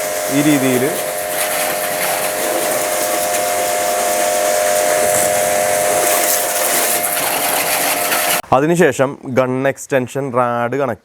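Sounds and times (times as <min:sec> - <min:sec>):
mid-pitched hum: 0:00.0 - 0:08.4
steady hiss: 0:00.0 - 0:08.5.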